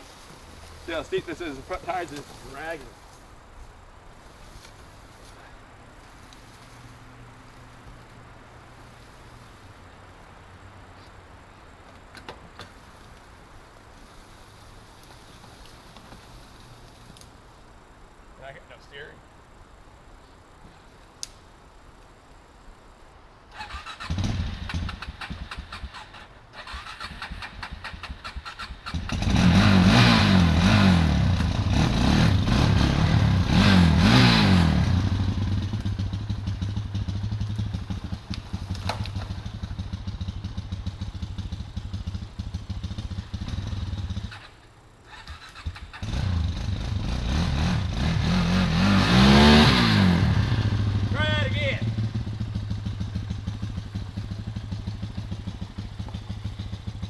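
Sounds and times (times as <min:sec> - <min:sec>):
quad engine starting and revving: 0:23.6 - 0:57.0.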